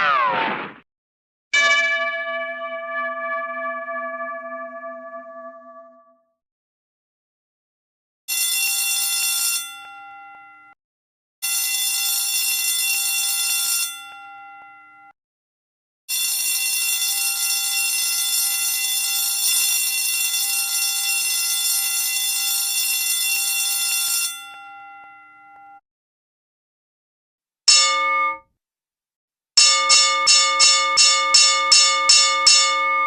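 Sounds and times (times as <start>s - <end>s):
electric alarm bell ringing: 1.6s - 5.8s, 8.3s - 10.8s, 11.4s - 15.0s, 16.1s - 25.7s, 27.7s - 28.4s, 29.6s - 33.0s.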